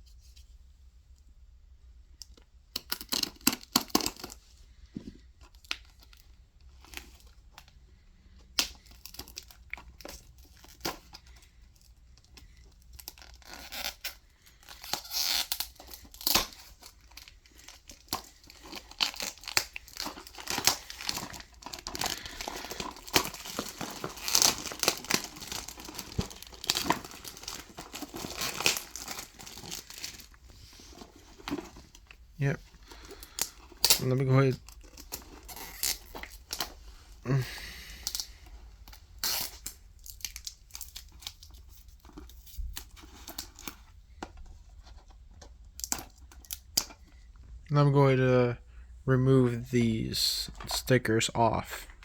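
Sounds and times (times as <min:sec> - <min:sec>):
plastic wrap crinkling and ripping: 0:02.8 - 0:04.4, 0:05.4 - 0:44.1, 0:44.7 - 0:47.2.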